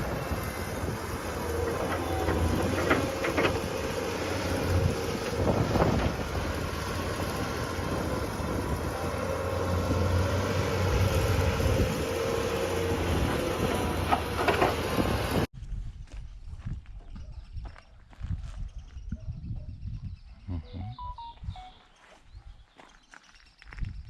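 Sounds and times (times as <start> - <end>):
heavy machine engine running: 0.0 - 15.5.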